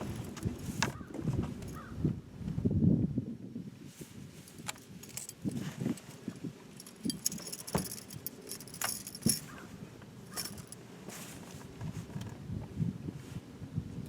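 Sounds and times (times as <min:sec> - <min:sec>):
small metal objects jingling: 0:06.7 - 0:09.6, 0:10.3 - 0:10.8.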